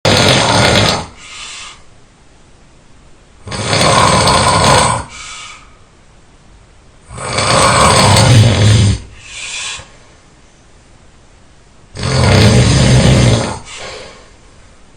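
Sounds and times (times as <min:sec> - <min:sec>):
person snoring loudly: 0:00.1 - 0:01.2, 0:03.4 - 0:05.2, 0:07.1 - 0:09.2, 0:12.0 - 0:14.2
soft breath: 0:01.2 - 0:01.9, 0:05.1 - 0:05.9, 0:09.1 - 0:10.7, 0:13.6 - 0:14.6.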